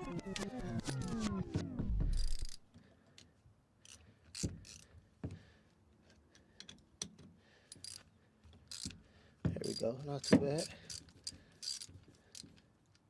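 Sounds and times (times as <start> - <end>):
socket ratchet clicks: 2.2 - 2.6, 9.6 - 12.5
metal tool contact: 9.6 - 12.6.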